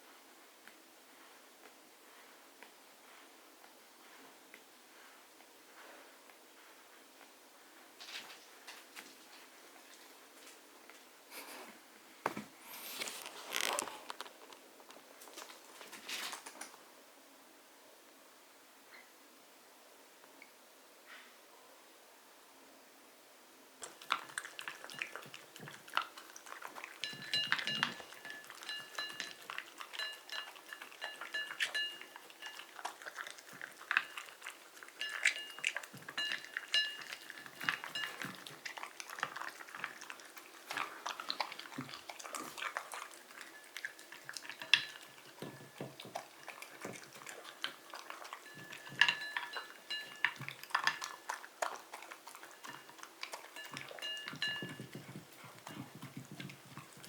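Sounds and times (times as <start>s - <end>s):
high ringing jingle: 53.6s - 55.0s.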